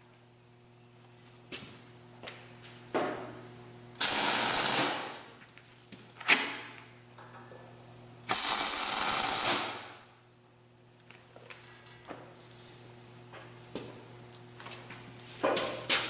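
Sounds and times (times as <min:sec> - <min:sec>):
crackling welding arc: 0:04.0 - 0:05.3, 0:08.2 - 0:10.2.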